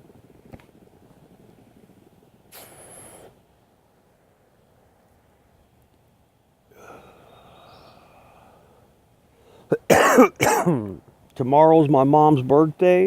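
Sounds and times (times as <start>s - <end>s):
person breathing softly: 6.7s - 9.7s
person coughing: 9.8s - 10.9s.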